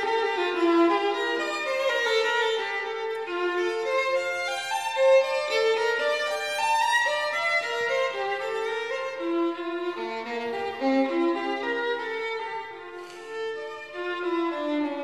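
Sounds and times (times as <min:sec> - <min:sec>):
violin melody: 0:00.0 - 0:15.0.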